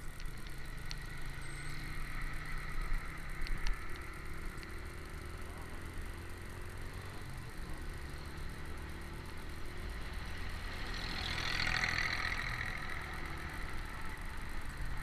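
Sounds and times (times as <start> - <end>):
small motorcycle engine running: 3.9 - 15.0.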